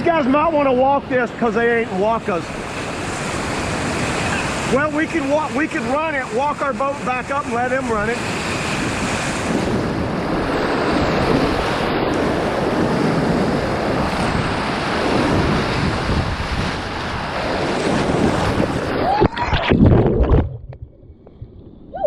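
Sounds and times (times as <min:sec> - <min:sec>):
river whitewater rushing: 0:01.8 - 0:19.2
wind buffeting microphone: 0:02.2 - 0:22.0.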